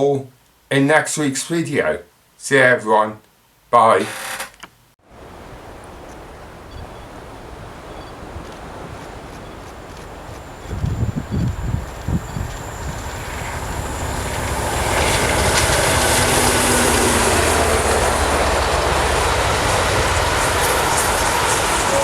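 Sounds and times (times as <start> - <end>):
train running past: 9.2 - 22.0.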